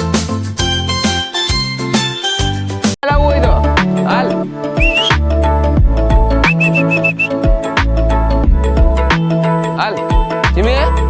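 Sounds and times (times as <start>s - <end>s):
short high synth riff: 6.5s - 7.4s.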